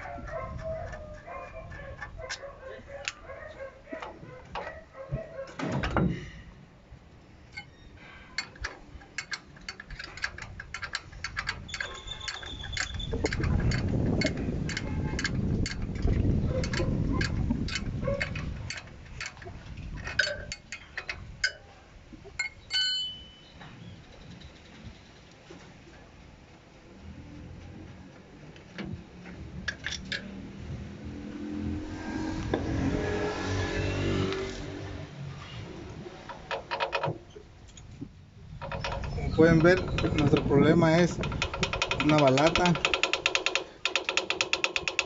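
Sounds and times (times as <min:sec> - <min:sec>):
metal scraping: 0:07.5 - 0:21.8, 0:29.7 - 0:37.1
hand tools clinking on metal: 0:38.8 - 0:45.0.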